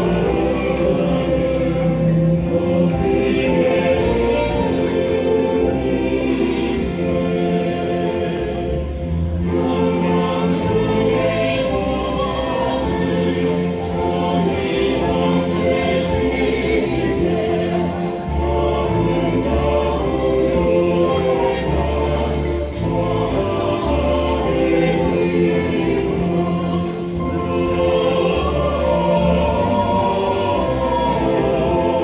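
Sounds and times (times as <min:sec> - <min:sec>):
choir singing: 0:00.0 - 0:32.0
instrumental accompaniment with bass: 0:00.0 - 0:32.0.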